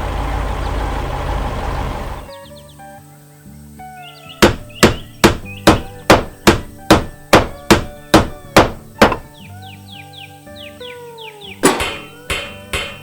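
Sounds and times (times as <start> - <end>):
cartoon background music: 2.3 - 13.0
hammer-like strikes: 4.4 - 9.3, 11.6 - 13.0.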